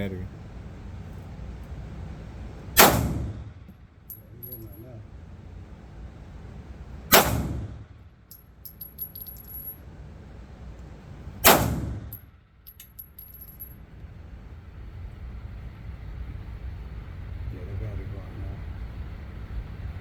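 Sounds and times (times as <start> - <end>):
pistol shots: 2.8 - 3.4, 7.1 - 7.7, 11.4 - 12.2.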